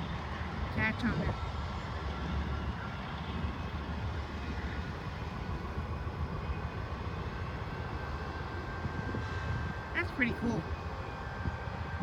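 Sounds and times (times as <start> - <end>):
train rumbling along track: 0.0 - 12.0
wind on microphone: 8.8 - 9.9.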